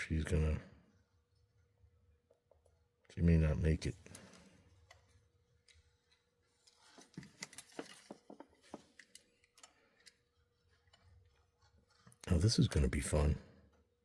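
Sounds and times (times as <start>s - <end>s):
small tools clicking and tapping: 4.2s - 12.2s.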